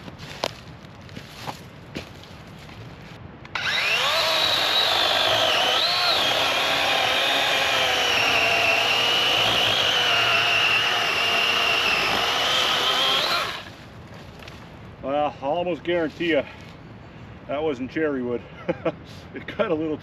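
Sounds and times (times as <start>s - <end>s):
electric chainsaw cutting log: 3.5s - 13.7s.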